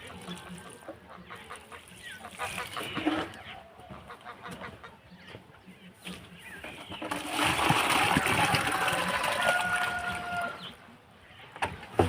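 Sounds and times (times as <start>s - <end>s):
poultry calling: 0.0s - 11.5s.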